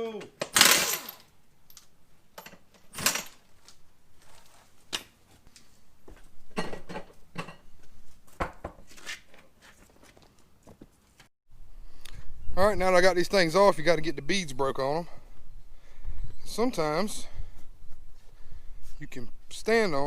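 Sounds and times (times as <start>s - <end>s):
metal parts clattering: 2.4s - 3.5s.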